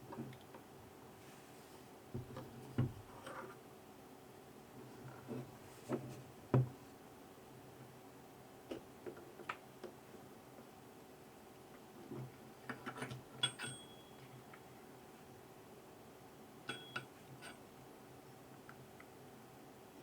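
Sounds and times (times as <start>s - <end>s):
metallic clinks ringing: 13.4s - 14.2s, 16.7s - 17.1s.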